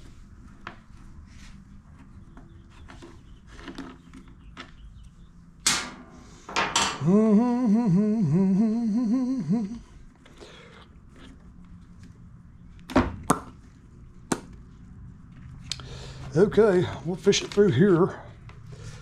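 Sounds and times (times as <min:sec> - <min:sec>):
man humming a tune: 0:06.9 - 0:10.0.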